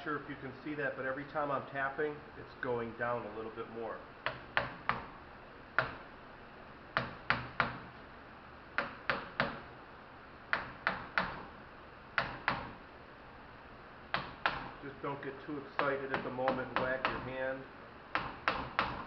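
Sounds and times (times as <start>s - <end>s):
hammer tapping on metal part: 15.8s - 17.3s, 18.1s - 19.0s.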